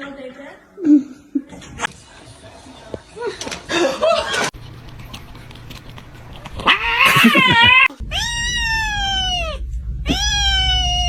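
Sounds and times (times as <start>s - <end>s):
cat meowing: 6.6s - 11.0s.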